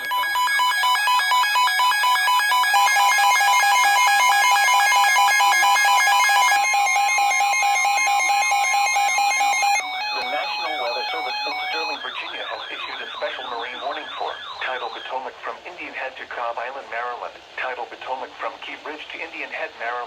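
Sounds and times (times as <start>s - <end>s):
electronic alarm tones: 0.0s - 15.2s.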